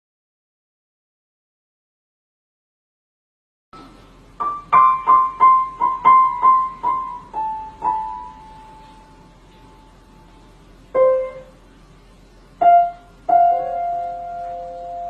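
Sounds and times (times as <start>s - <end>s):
piano melody: 3.8s - 11.7s, 12.5s - 15.0s.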